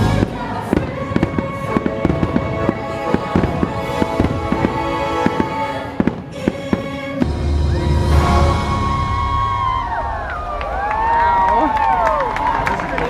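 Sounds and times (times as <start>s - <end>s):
fireworks popping and crackling: 0.0s - 7.2s
music playing: 0.0s - 9.7s.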